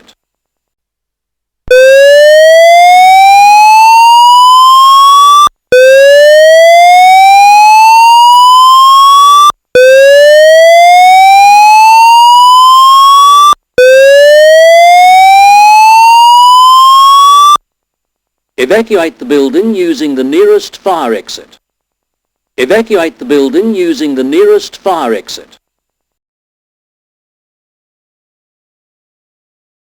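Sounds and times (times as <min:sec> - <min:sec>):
fire alarm electronic whoop: 0:01.7 - 0:17.6.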